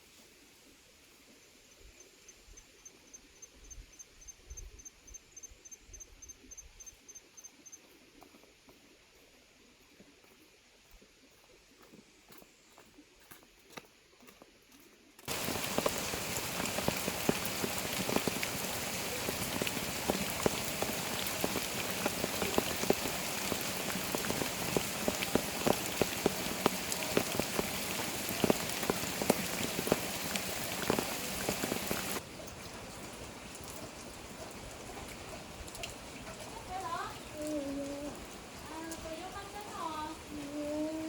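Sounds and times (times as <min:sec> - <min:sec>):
soft rain patter: 0:00.0 - 0:41.0
heavy rain falling: 0:15.3 - 0:41.0.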